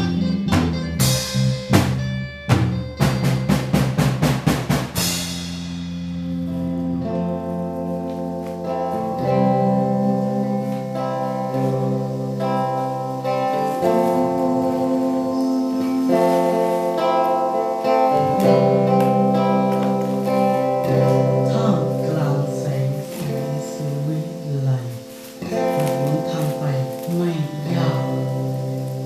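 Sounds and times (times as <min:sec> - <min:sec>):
drum fill: 0:00.0 - 0:09.5
guitars and bass holding chords: 0:00.0 - 0:29.0.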